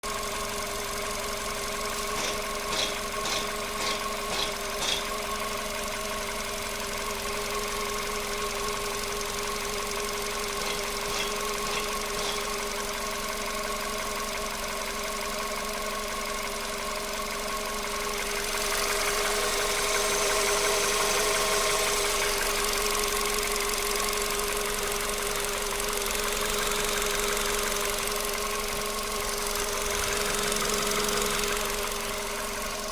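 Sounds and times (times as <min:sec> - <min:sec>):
car engine idling with whine: 0:00.0 - 0:32.9.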